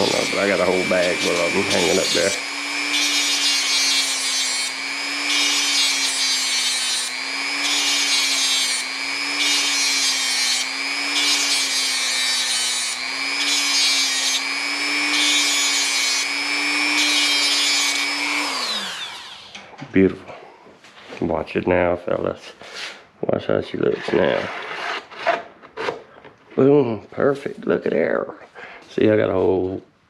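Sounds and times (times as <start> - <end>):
power grinder grinding metal: 0.0 - 19.6.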